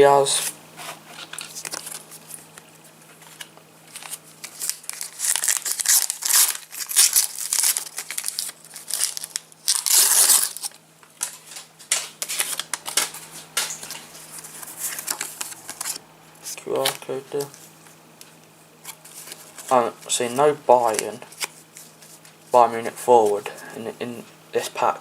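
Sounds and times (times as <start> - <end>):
cards shuffled: 0.4 - 17.6, 18.8 - 23.8
foil packet crinkling: 1.1 - 17.6, 20.8 - 23.7.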